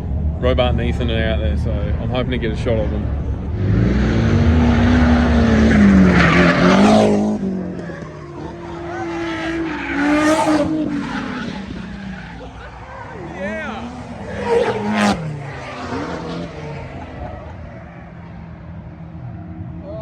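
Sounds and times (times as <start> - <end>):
car engine at high revs: 0.0 - 20.0
tyres squealing: 5.0 - 18.3.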